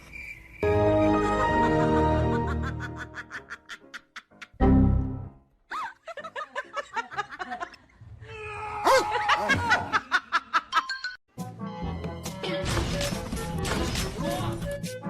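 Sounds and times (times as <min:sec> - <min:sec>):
background music: 0:00.6 - 0:05.6, 0:11.3 - 0:15.0
person laughing: 0:01.1 - 0:04.6, 0:05.7 - 0:07.8, 0:09.0 - 0:10.9.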